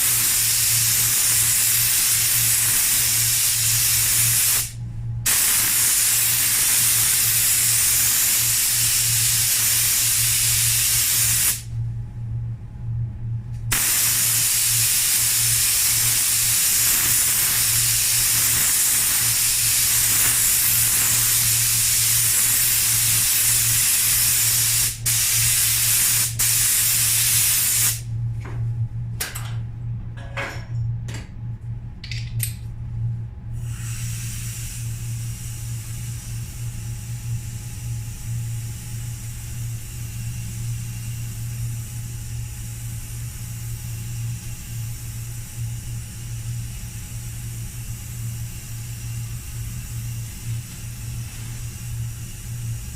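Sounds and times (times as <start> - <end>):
paint spray gun hissing: 0.0 - 11.7, 13.7 - 28.0, 33.6 - 36.6, 39.2 - 41.1, 47.3 - 52.9
low hum: 11.6 - 21.8.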